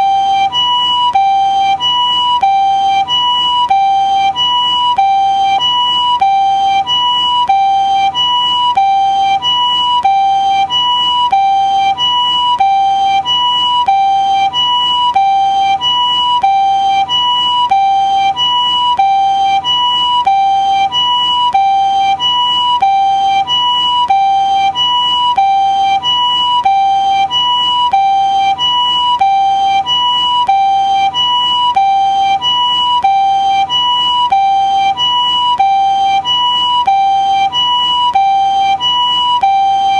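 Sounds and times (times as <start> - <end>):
two-tone ambulance siren: 0.0 - 39.9.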